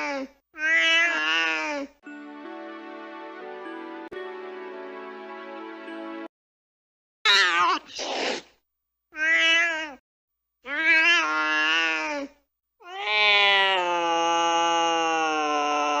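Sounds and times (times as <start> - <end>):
cat crying and hissing: 0.0 - 1.9, 7.3 - 8.5, 9.2 - 10.0
cat meowing yowls: 0.6 - 1.6, 9.2 - 10.0, 10.7 - 12.1, 12.8 - 13.8.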